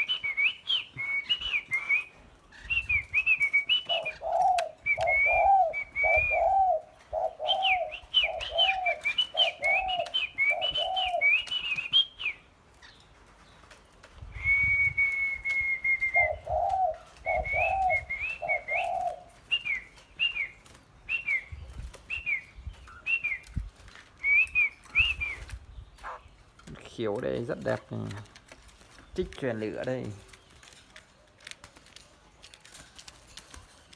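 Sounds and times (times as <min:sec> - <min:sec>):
long held bird whistle: 0:00.0 - 0:06.8, 0:07.4 - 0:12.5, 0:14.3 - 0:16.5, 0:17.2 - 0:23.6, 0:24.2 - 0:25.6
caged birds singing: 0:00.0 - 0:33.9.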